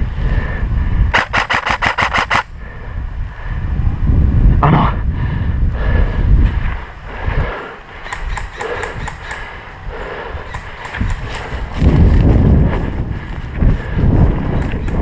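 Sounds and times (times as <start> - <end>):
wind buffeting microphone: 0.0 - 15.0
airsoft gun full-auto burst: 1.1 - 2.5
movement noise: 6.4 - 15.0.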